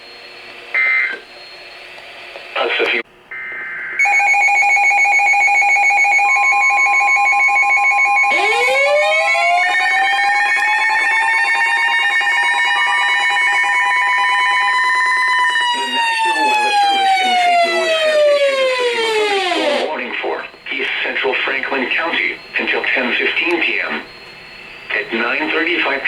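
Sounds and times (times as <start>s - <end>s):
siren winding up: 0.6s - 1.9s, 3.3s - 20.6s
pulsing electronic alarm tone: 3.3s - 26.0s.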